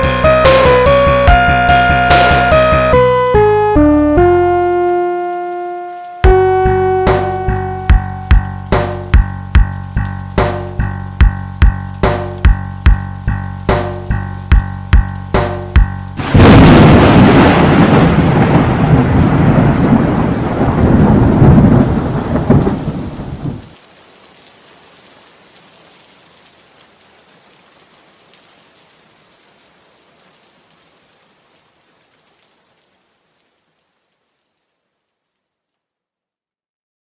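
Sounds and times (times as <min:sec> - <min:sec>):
heavy rain: 0:00.0 - 0:35.4
thunder rumbling: 0:15.7 - 0:23.8.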